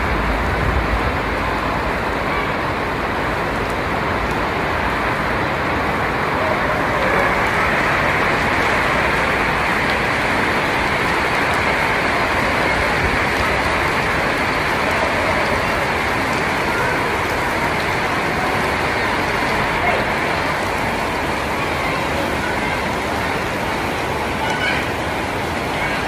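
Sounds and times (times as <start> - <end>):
heavy rain pattering: 0.0 - 26.0.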